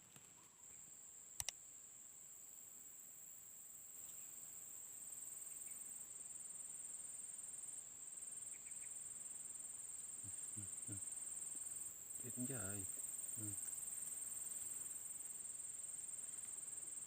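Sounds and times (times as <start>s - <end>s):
high-pitched insect chorus: 0.0s - 17.0s.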